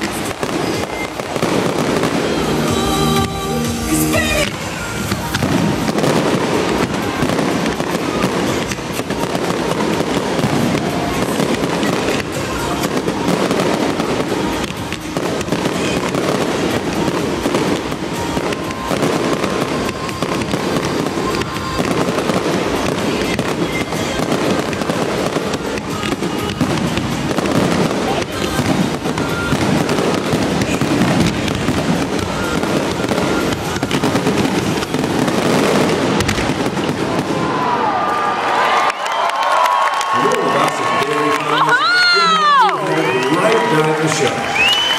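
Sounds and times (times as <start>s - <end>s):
music on loudspeakers: 0.0s - 37.4s, 40.2s - 44.7s
fireworks bursting and crackling: 0.0s - 44.9s.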